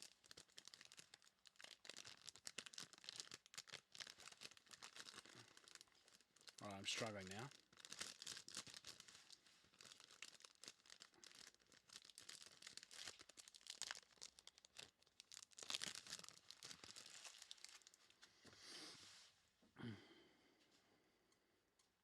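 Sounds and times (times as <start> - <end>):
plastic wrappers crinkling: 0.0 - 18.3.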